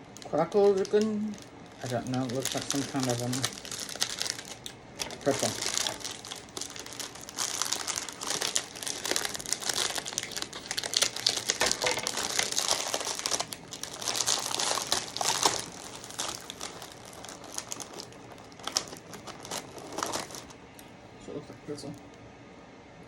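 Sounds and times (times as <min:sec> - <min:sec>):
snack packaging crinkling: 0:00.0 - 0:20.9.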